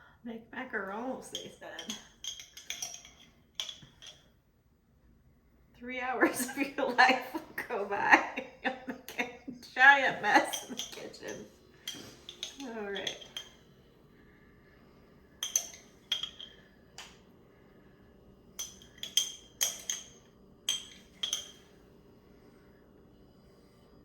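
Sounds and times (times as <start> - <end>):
metal spoon clinking on glass jar: 1.2 - 4.2, 8.4 - 13.6, 15.4 - 17.2, 18.6 - 21.7.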